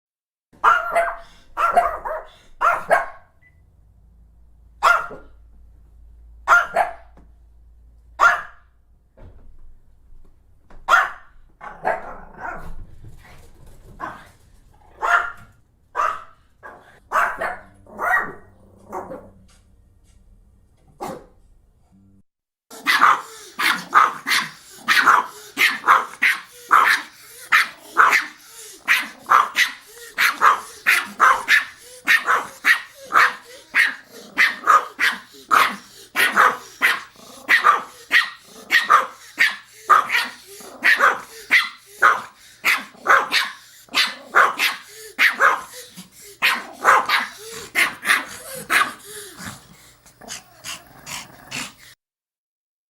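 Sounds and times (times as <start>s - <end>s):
small dog barking: 0.6s - 3.4s, 4.8s - 5.4s, 6.5s - 7.2s, 8.2s - 8.7s, 10.9s - 12.8s, 15.0s - 19.2s, 22.7s - 49.1s.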